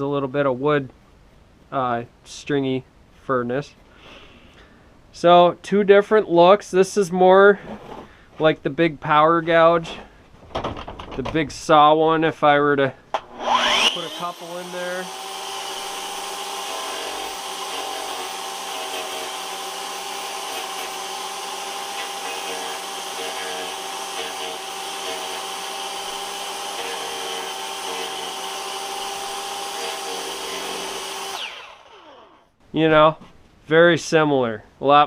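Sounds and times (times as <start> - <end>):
power carving tool whining: 13.3 - 32.5.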